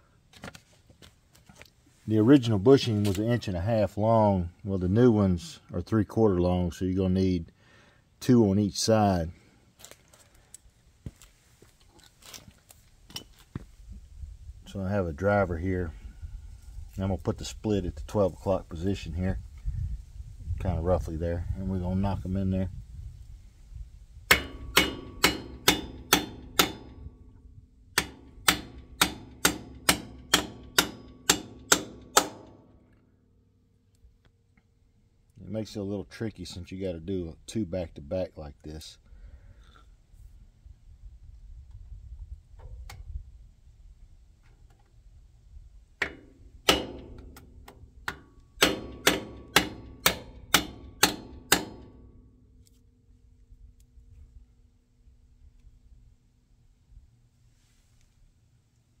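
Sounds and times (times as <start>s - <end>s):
hammer striking metal driver: 24.3s - 27.1s, 28.0s - 32.6s, 46.0s - 47.5s, 48.1s - 52.0s.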